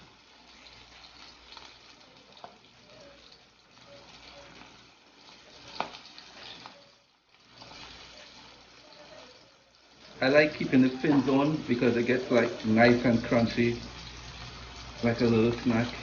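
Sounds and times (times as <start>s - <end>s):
fish sizzling in a pan: 0.0s - 16.0s.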